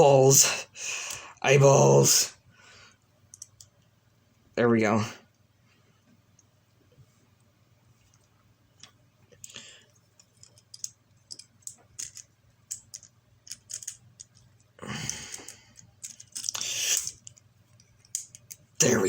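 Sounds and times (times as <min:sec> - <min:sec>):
plastic toy bricks clicking together: 0:03.3 - 0:03.7, 0:10.4 - 0:14.5, 0:15.1 - 0:17.4, 0:18.0 - 0:18.6
rattle of handled plastic pieces: 0:10.2 - 0:18.8.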